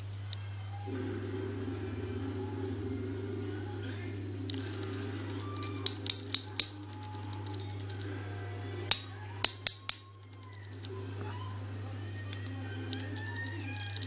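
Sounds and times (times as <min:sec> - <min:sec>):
sharp metallic clicks of lock parts: 0:08.9 - 0:10.1.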